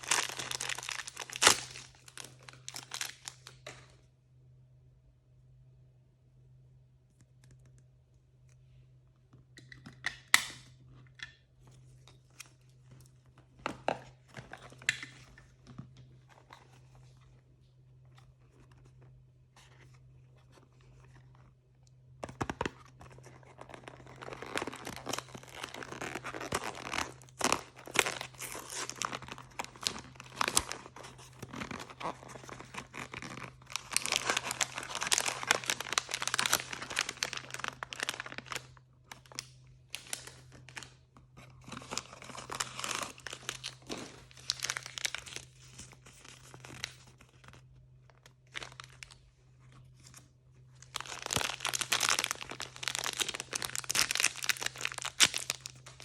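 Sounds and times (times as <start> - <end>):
packaging crinkling and tearing: 0.0 - 3.9, 22.2 - 56.0.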